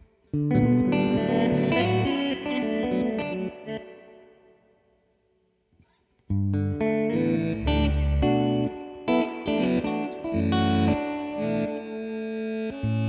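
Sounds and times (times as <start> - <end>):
electric guitar chords: 0.0 - 4.6, 6.3 - 13.0
deep low guitar notes: 0.4 - 2.1, 6.3 - 8.8, 9.6 - 11.7.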